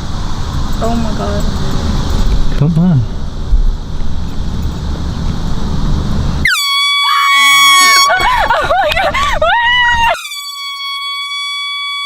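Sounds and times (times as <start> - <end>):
air horn blast: 6.4 - 8.1, 10.2 - 12.0
person crying out: 7.0 - 10.2.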